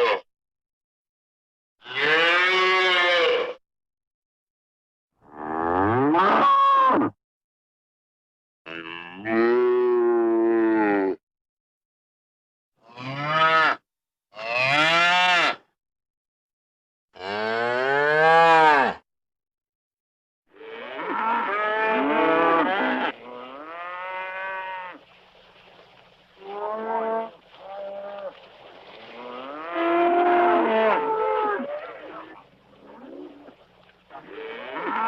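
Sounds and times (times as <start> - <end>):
cows mooing: 1.8 - 3.4, 8.7 - 11.2, 20.6 - 25.0, 26.4 - 28.4, 29.1 - 33.5, 34.1 - 35.0.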